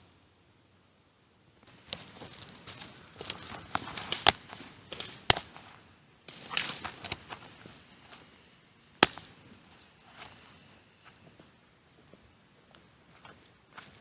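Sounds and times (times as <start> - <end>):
twigs snapping: 1.6 - 8.4, 9.0 - 11.5
dry leaves and twigs crackling: 1.6 - 14.0.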